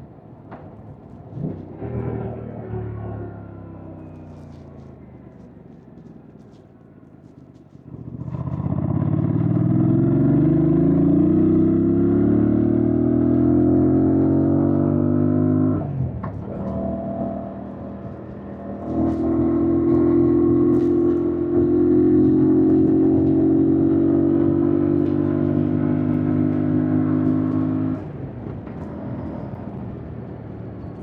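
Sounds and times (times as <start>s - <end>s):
motorcycle engine revving: 8.1s - 29.8s.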